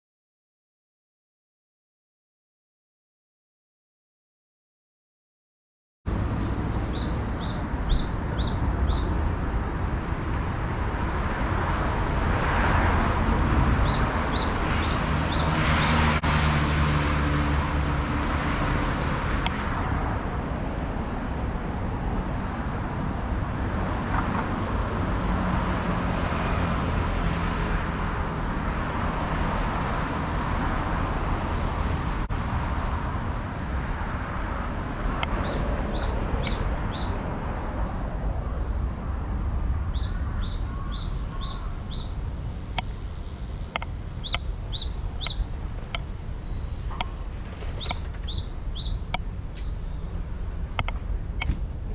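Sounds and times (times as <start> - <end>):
songbird chirping: 6.6 - 9.9, 13.6 - 16.2, 35.2 - 37.5, 39.6 - 51.5.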